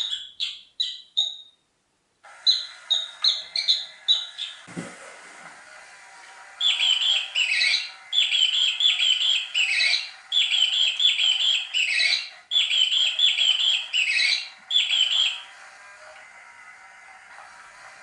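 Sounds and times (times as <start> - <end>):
electronic chirping squeak toy: 0.0 - 1.6, 2.4 - 4.7, 6.6 - 15.5.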